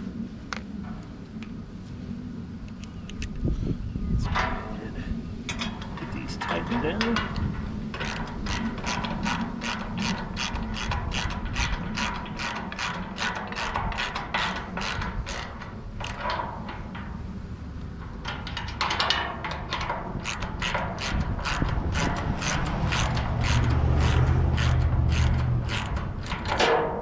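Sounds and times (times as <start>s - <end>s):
ratchet wrench clicking: 7.0s - 16.8s, 18.3s - 26.8s.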